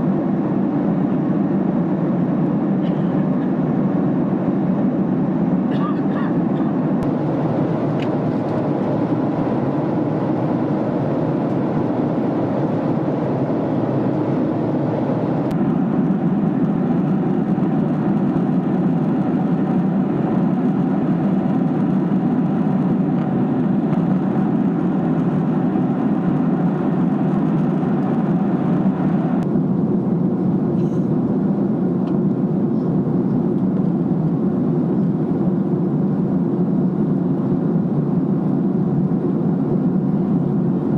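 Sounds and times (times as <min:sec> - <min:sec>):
jet engines rumbling: 0:00.0 - 0:40.9
air rushing over fuselage: 0:06.8 - 0:29.8.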